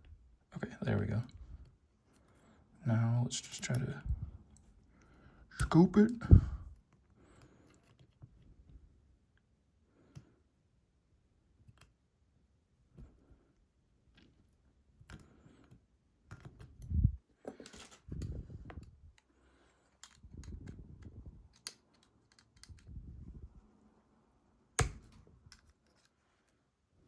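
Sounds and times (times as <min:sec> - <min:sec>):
lock picks clicking and scraping: 0:03.3 - 0:08.4, 0:14.2 - 0:23.1, 0:24.8 - 0:26.6.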